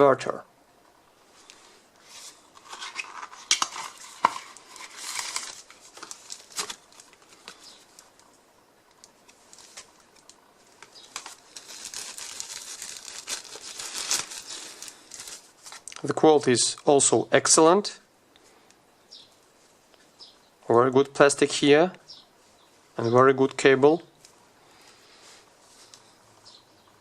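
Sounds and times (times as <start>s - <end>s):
rustling: 1.2s - 16.1s, 24.2s - 26.6s.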